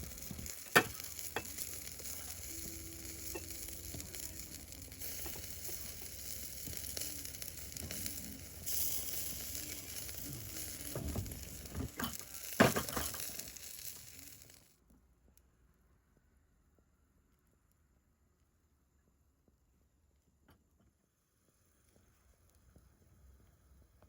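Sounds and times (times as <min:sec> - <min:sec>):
meat sizzling over a fire: 0:00.0 - 0:14.7.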